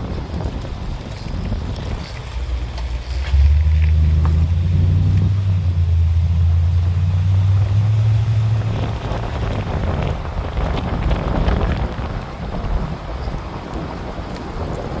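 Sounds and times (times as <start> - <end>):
pickup truck engine drone: 0.0 - 15.0
road and wind noise: 0.0 - 15.0.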